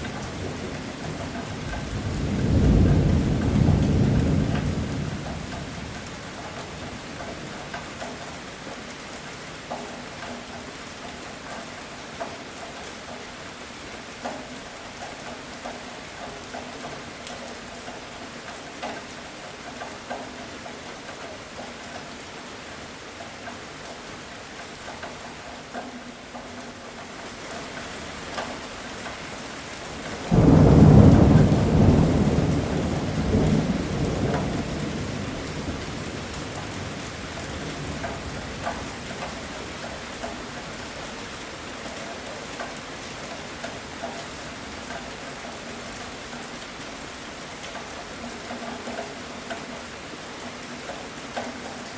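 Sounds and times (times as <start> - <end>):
heavy rain falling: 0.0 - 51.9
thunder rumbling: 0.4 - 6.3, 30.0 - 39.3
loud low thunderclap: 30.2 - 36.3.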